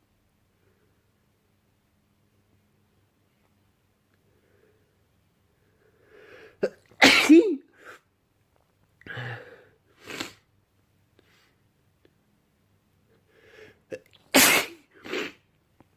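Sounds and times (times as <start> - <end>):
man sneezing: 6.6 - 7.7, 14.3 - 15.4.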